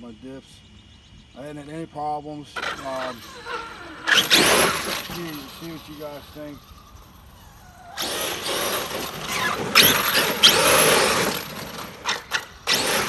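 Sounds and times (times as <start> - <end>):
tyres on grass: 1.4 - 13.0
electric motor whine: 2.6 - 13.0.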